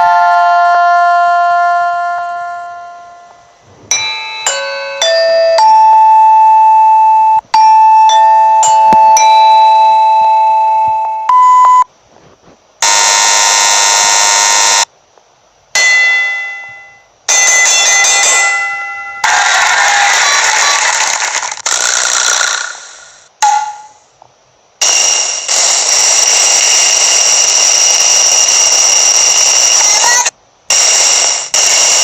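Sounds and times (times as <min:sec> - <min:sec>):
electronic chime tones: 0:02.5 - 0:11.9
doorbell jingle: 0:03.9 - 0:11.3, 0:15.8 - 0:19.5.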